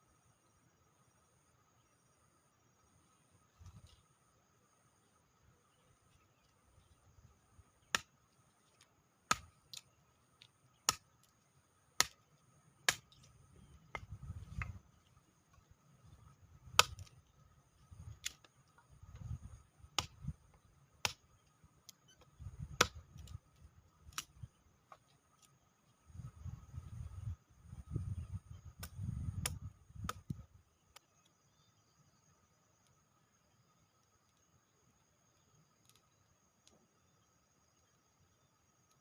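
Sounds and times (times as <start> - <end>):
wind rumbling on microphone: 13.6 - 14.9, 19.0 - 20.5, 22.4 - 23.3, 26.0 - 30.6.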